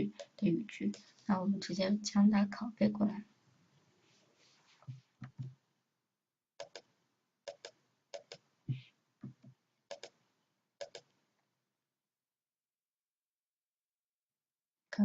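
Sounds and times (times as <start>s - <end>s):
computer mouse clicking: 0.1s - 1.1s, 6.6s - 6.9s, 7.5s - 8.4s, 9.9s - 10.2s, 10.8s - 11.2s.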